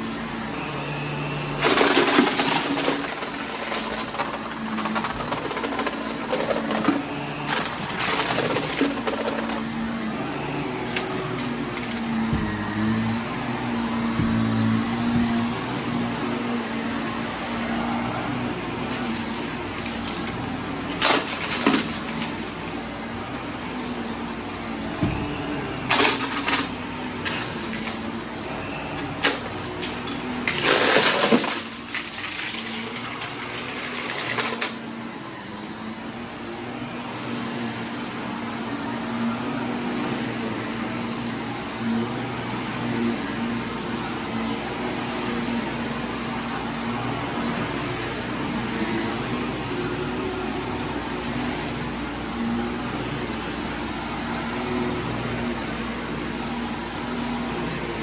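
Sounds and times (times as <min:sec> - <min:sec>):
vacuum cleaner running: 0:00.0 - 0:58.0
debris rattling up vacuum: 0:00.2 - 0:35.0.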